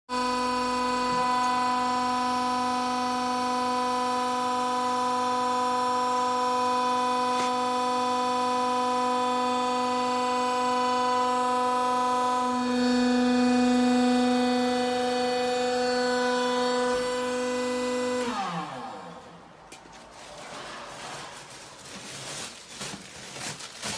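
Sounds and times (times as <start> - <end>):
hydraulic power unit humming: 0.1 - 20.0.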